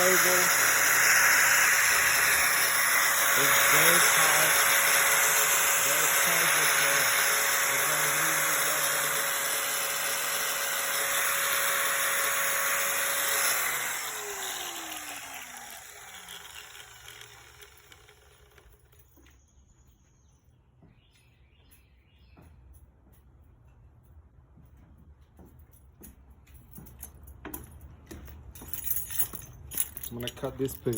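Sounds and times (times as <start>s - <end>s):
electric grinder whining: 0.0s - 19.0s.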